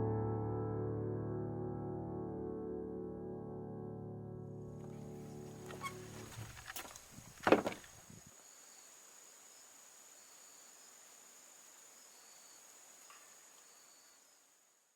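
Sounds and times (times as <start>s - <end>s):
music: 0.0s - 5.8s
crickets chirping: 4.8s - 14.9s
insect high whine: 5.3s - 14.9s.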